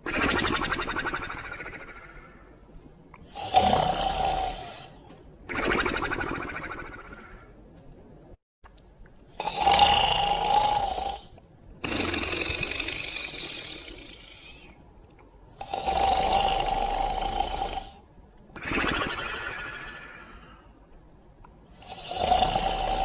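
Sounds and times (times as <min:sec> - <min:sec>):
cartoon dog snoring: 0:00.0 - 0:02.3, 0:03.3 - 0:07.5, 0:09.4 - 0:14.7, 0:15.6 - 0:18.0, 0:18.6 - 0:20.4, 0:21.8 - 0:23.0.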